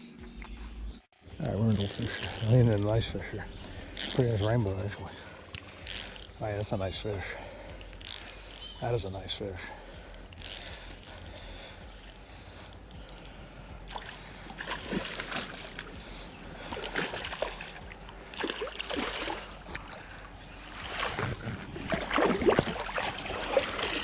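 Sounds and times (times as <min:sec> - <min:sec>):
fish splashing in water: 0:03.8 - 0:06.4, 0:09.6 - 0:24.0.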